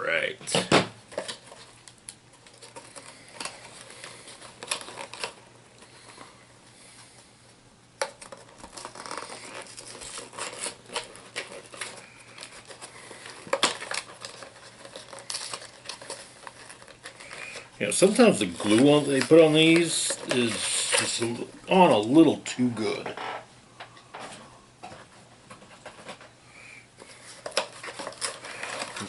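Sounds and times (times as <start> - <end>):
plastic packaging being torn open: 1.1 - 5.4, 8.0 - 21.4, 27.1 - 29.0.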